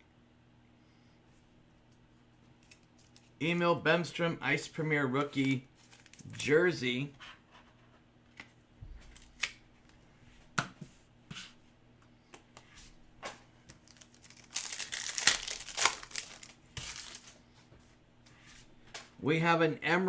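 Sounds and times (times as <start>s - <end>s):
foil wrapper tearing and crinkling: 5.8s - 6.3s, 13.7s - 17.4s.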